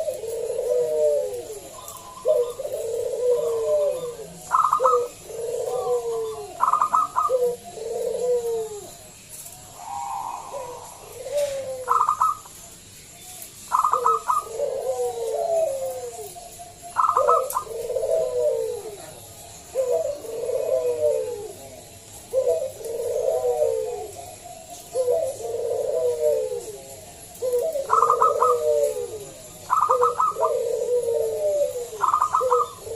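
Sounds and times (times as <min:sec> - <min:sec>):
dove cooing: 0:00.0 - 0:32.9.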